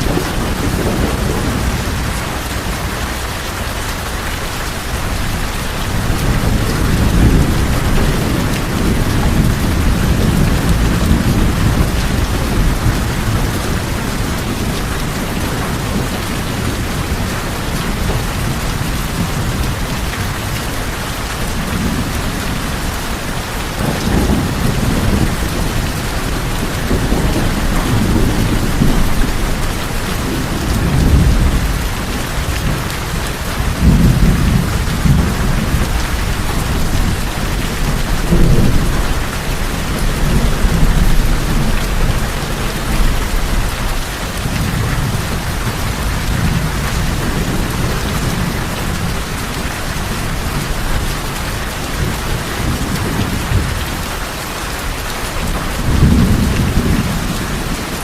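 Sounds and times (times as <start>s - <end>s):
heavy rain on a tin roof: 0.0s - 58.0s
low thunder rumbling: 0.0s - 58.0s.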